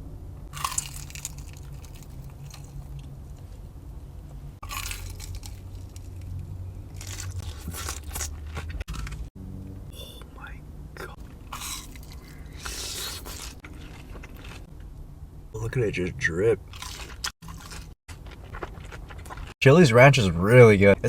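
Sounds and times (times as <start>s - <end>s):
person chewing wetly: 0.5s - 3.0s, 4.6s - 6.3s, 6.9s - 9.2s, 11.0s - 14.7s, 16.7s - 19.6s.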